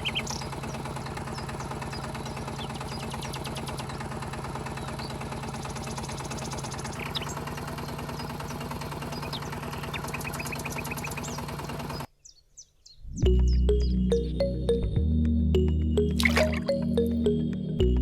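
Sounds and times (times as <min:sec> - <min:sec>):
small motor ticking: 0:00.0 - 0:12.1
birds chirping: 0:00.0 - 0:14.9
music: 0:13.2 - 0:18.0.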